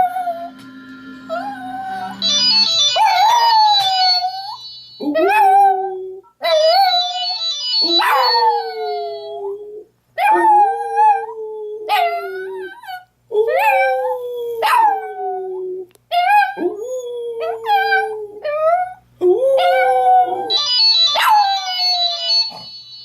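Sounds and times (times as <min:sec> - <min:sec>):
dog howling: 0:07.8 - 0:09.6.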